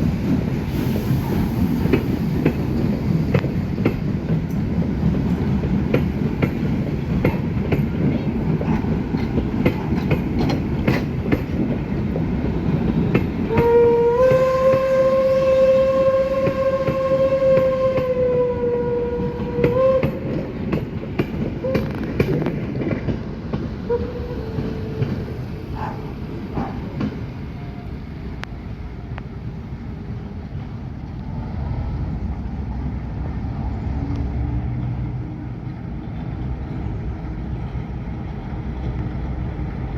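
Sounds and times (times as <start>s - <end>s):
train wheels rumbling and clattering: 0.0s - 39.9s
steam whistle blast: 13.5s - 20.3s.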